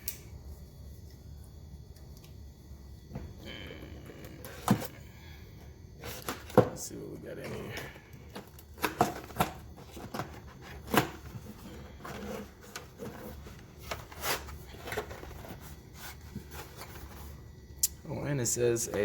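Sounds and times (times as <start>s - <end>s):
cardboard packaging rustling: 8.3s - 17.5s.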